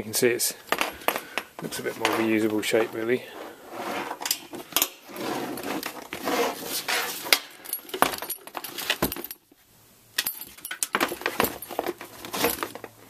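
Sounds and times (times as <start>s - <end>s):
metal hand tools clinking: 7.3s - 9.5s, 10.2s - 12.9s.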